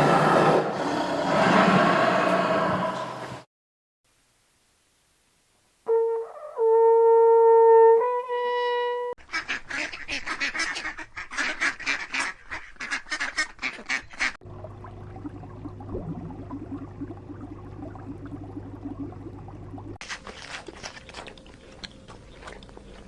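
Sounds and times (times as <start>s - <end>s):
ducks quacking: 9.2s - 14.4s
steady low hum: 14.4s - 20.0s.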